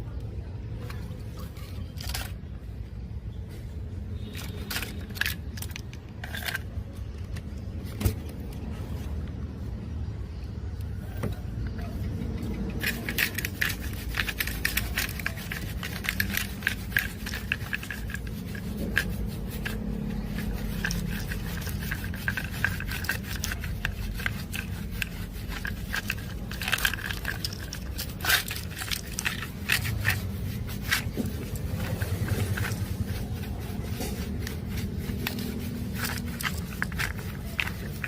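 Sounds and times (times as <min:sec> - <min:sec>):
tools clicking and scraping: 0:00.1 - 0:02.6, 0:04.2 - 0:09.4, 0:10.8 - 0:38.0.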